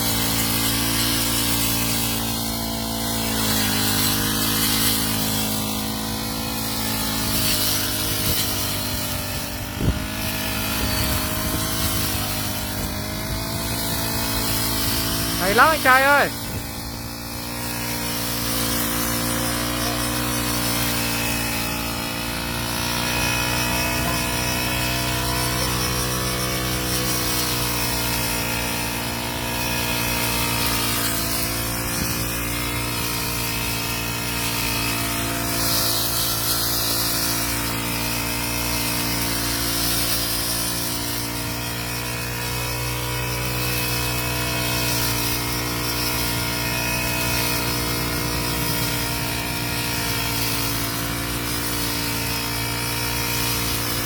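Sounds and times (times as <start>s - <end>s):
brush cutter engine running: 0.0s - 54.0s.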